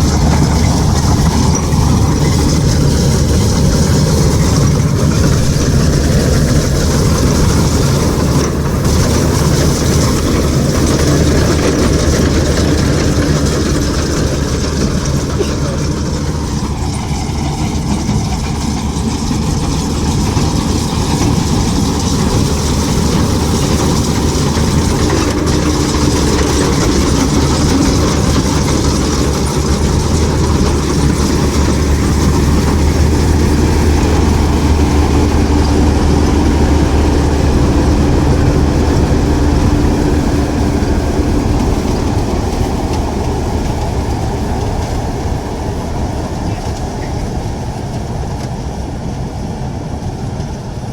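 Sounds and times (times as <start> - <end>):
combine harvester running: 0.0 - 50.9.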